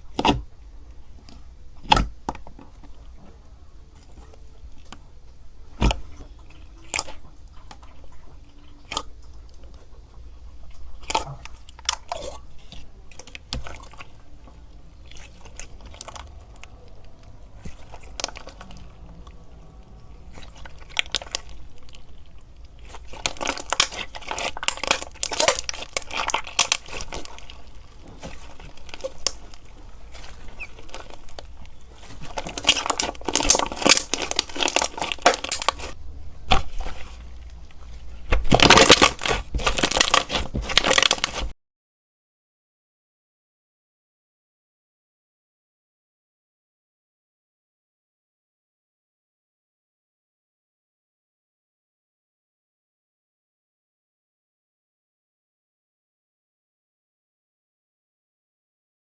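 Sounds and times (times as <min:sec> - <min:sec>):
crunchy slime crackling: 0:00.0 - 0:41.5.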